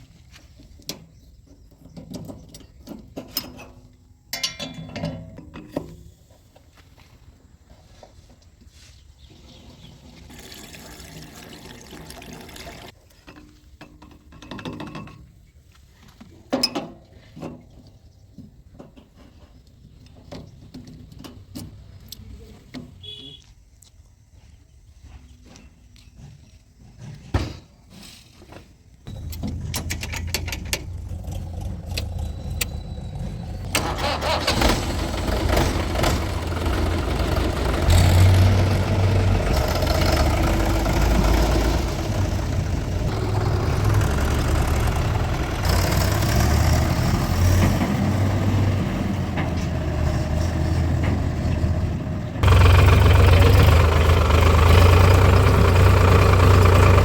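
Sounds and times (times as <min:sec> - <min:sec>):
diesel engine clattering: 0:29.1 - 0:57.0.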